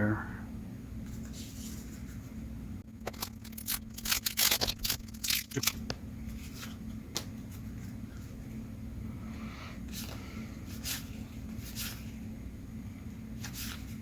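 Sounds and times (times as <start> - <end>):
paper rustling: 3.0 - 8.4, 13.4 - 14.0.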